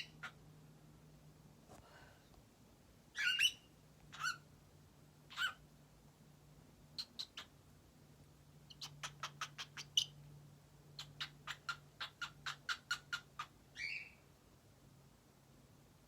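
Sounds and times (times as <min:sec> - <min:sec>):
bird whistled chirp: 0:03.2 - 0:03.6, 0:13.8 - 0:14.2.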